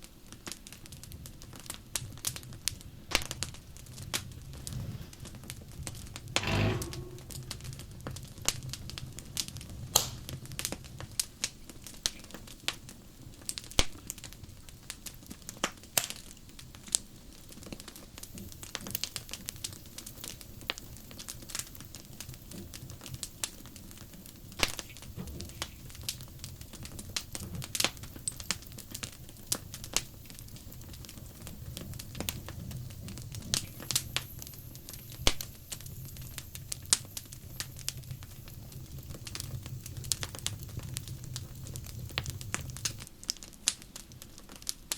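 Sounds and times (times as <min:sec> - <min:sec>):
wood fire crackling and popping: 0:00.3 - 0:44.9.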